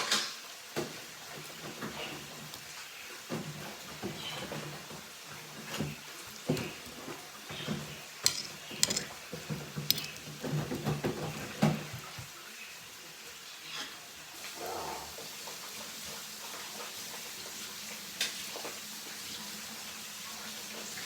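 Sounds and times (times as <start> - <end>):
tableware clinking: 8.2 - 9.1, 9.8 - 10.4.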